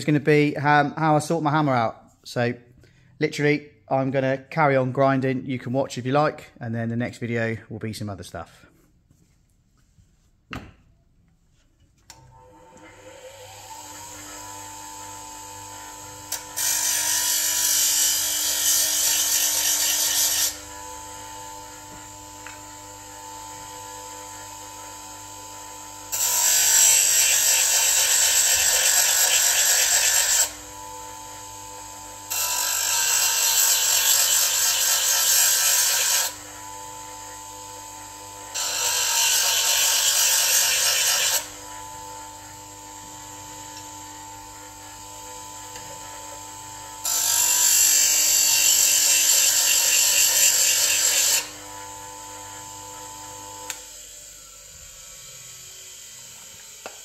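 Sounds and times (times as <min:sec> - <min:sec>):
bench grinder humming: 0:12.1 - 0:57.0.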